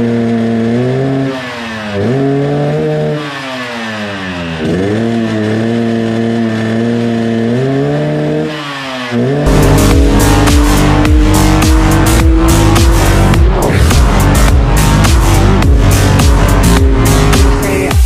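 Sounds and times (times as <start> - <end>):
motorcycle engine revving: 0.0 - 18.0
electronic music with heavy beat: 9.5 - 18.0.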